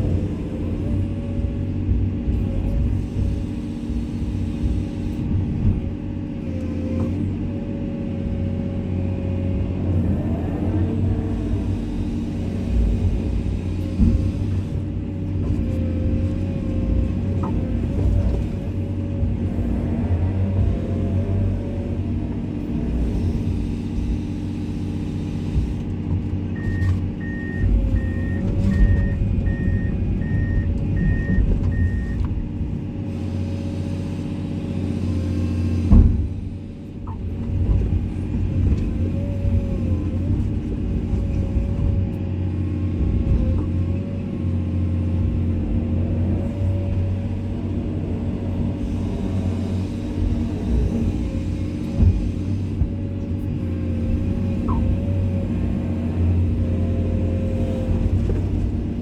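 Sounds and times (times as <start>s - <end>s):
excavator diesel engine running: 0.0s - 59.0s
hydraulic whine: 22.2s - 37.9s
travel alarm beeping: 26.6s - 32.2s.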